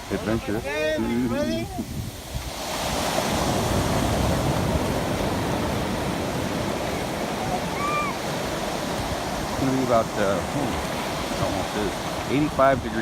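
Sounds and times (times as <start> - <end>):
ocean surf washing onto beach: 0.0 - 13.0.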